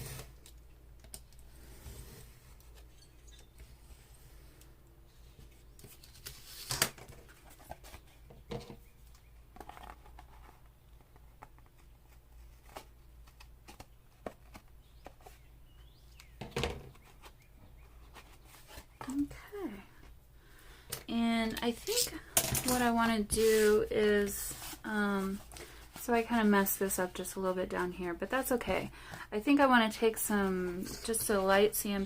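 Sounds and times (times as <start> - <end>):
clicks and rustles of cardboard: 5.3 - 19.2.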